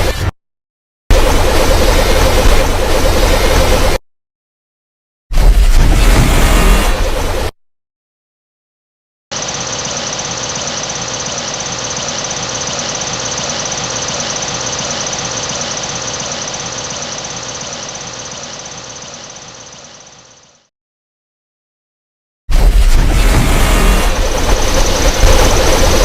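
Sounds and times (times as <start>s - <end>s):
combine harvester engine idling: 9.3s - 20.6s.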